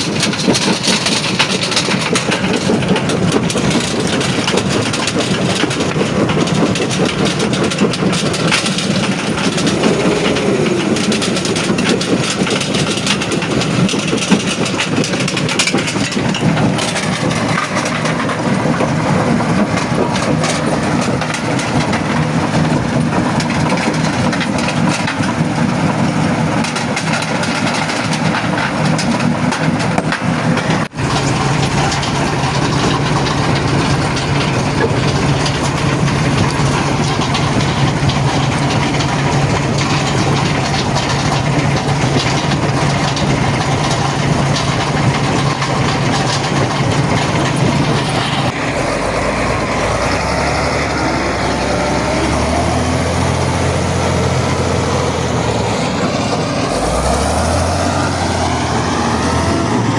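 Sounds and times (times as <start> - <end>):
machine hum: 0.0 - 14.8, 30.8 - 59.9
deep engine drone: 0.0 - 26.0, 30.7 - 59.9
rock grinding and clattering: 0.0 - 48.6.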